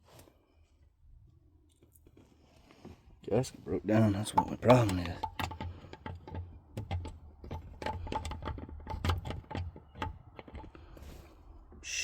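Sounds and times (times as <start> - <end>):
light metal clicks and taps: 4.2 - 10.8.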